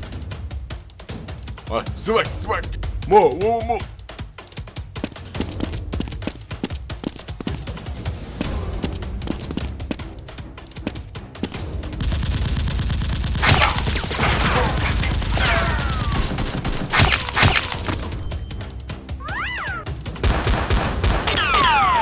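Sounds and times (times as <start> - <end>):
background music: 0.0 - 22.0
rapid gunfire: 11.8 - 18.2, 20.2 - 22.0.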